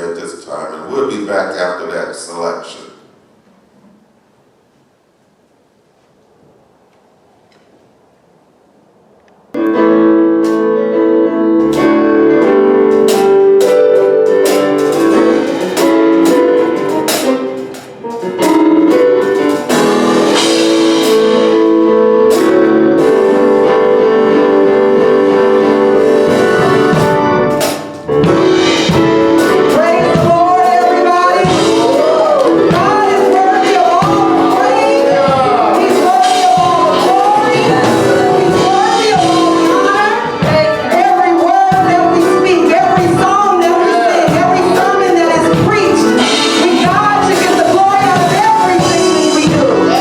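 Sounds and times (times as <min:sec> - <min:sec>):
keyboard chords: 0:09.5 - 0:50.0
drum hits: 0:11.6 - 0:50.0
person singing: 0:28.3 - 0:50.0.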